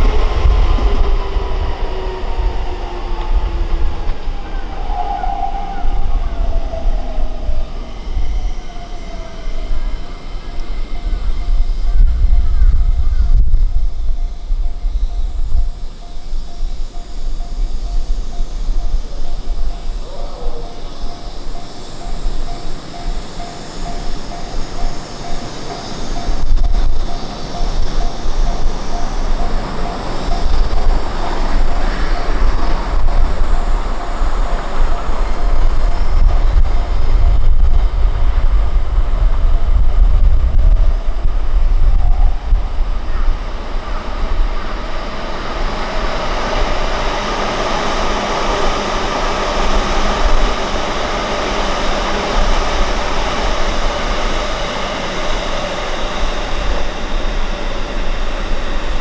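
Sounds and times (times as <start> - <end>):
train rumbling on rails: 0.0 - 59.0
level crossing bell ringing: 7.2 - 38.5.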